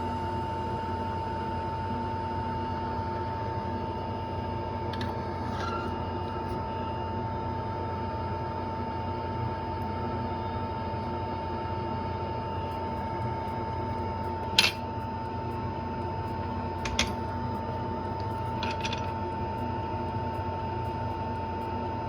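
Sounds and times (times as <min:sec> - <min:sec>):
bench equipment hum: 0:00.0 - 0:22.0
metal tools clicking: 0:14.6 - 0:14.8, 0:16.9 - 0:17.2, 0:18.6 - 0:19.1.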